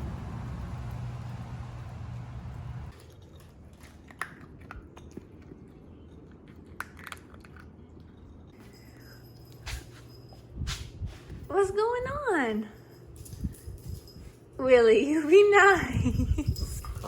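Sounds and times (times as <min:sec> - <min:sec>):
low rumbling noise: 0:00.0 - 0:02.9
puppy chewing clicks and crunches: 0:02.9 - 0:08.6.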